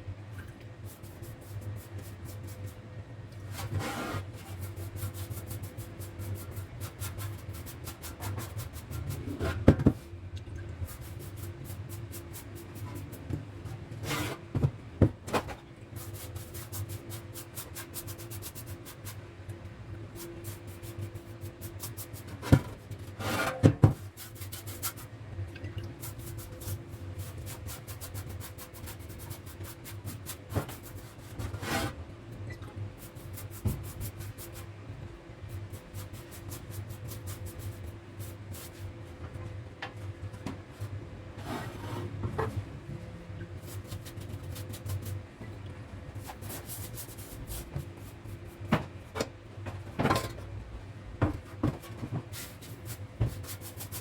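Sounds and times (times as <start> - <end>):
hand scraping strokes: 3.5 - 6.5.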